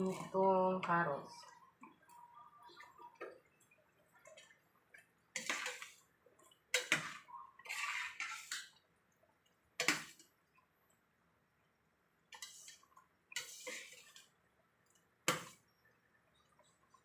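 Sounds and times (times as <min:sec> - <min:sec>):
utensil scraping and knocking pan: 0:06.7 - 0:08.7.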